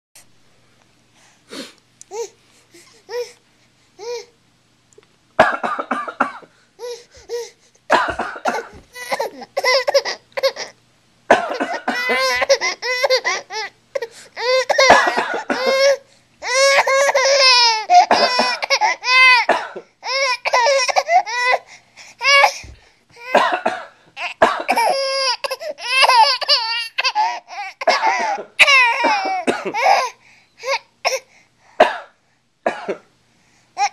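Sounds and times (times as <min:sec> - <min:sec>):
coughing: 0:05.4 - 0:06.6, 0:07.9 - 0:21.6, 0:23.2 - 0:30.2, 0:31.0 - 0:33.1.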